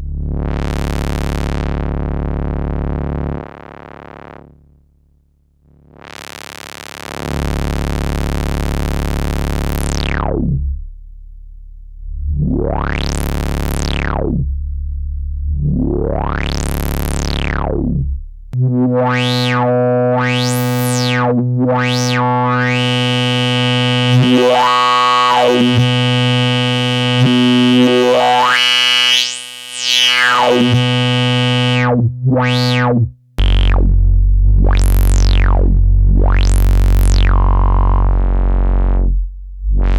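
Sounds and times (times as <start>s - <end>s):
synthesizer tone with filter sweeps: 12.0s - 14.6s, 15.3s - 39.9s.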